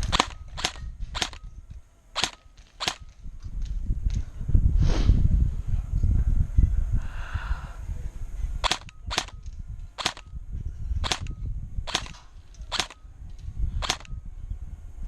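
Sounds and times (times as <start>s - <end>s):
airsoft gun shots: 0.0s - 1.5s, 2.2s - 3.2s, 8.6s - 9.4s, 10.0s - 10.4s, 11.0s - 13.0s, 13.8s - 14.2s.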